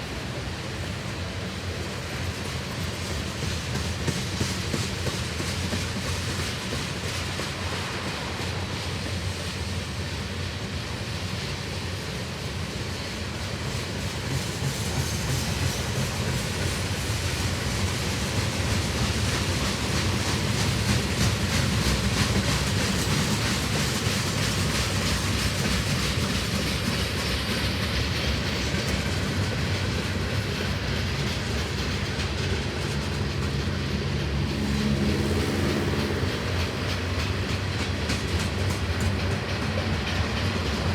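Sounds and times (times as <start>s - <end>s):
freight train cars rolling past: 0.0s - 40.9s
steel wheels clicking over rails: 13.4s - 40.9s.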